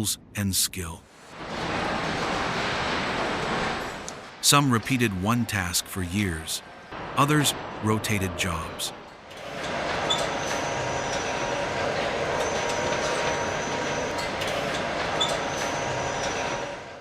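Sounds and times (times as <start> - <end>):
industrial machinery din: 9.2 - 17.0.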